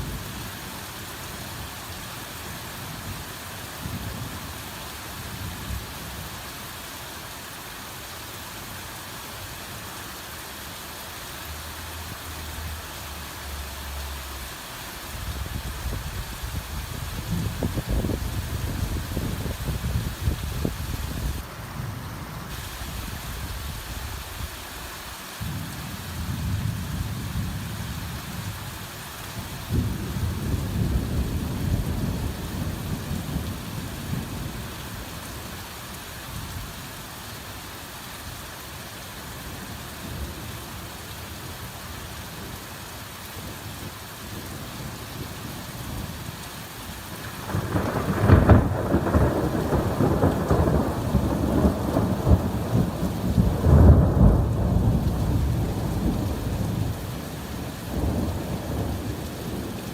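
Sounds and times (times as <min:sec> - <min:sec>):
heavy rain: 0:00.0 - 0:59.9
thunder rumbling: 0:15.2 - 0:21.4, 0:47.2 - 0:59.7.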